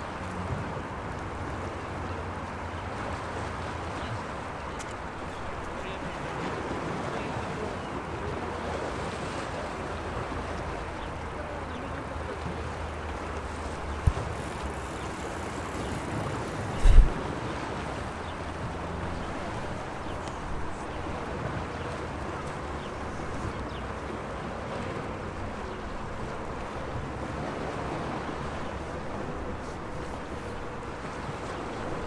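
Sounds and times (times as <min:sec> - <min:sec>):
sea waves washing on shore: 0:00.0 - 0:32.0
brief low thump: 0:16.8 - 0:17.2.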